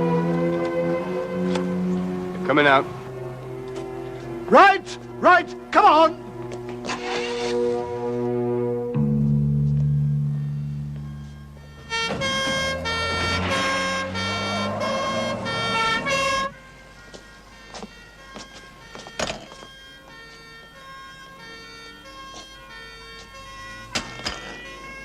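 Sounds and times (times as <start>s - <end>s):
two-tone emergency siren: 0.0s - 5.3s, 5.9s - 25.0s
low held music chord: 0.0s - 6.8s, 7.6s - 18.9s.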